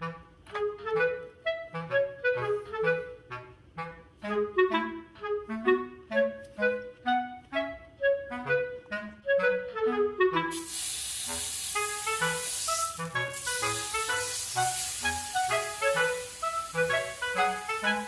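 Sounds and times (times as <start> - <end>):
clarinet-like melody: 0.0 - 18.0
steady hiss: 10.5 - 18.0.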